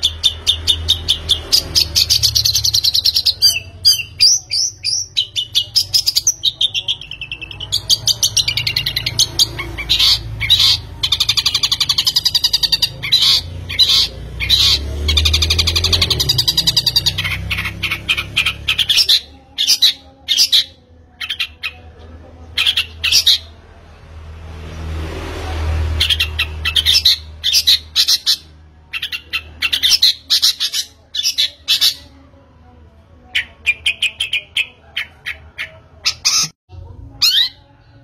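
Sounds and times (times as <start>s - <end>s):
bird singing in trills: 0.0s - 21.9s.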